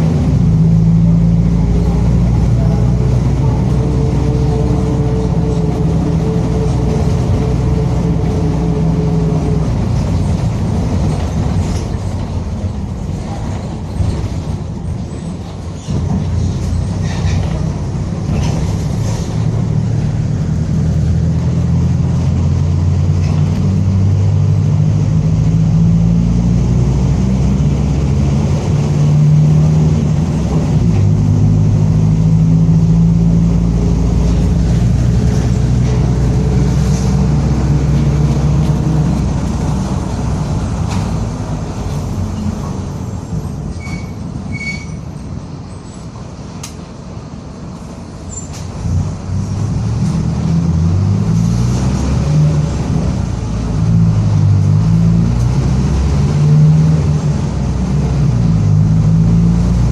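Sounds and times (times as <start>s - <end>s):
bus diesel engine: 0.0s - 59.9s.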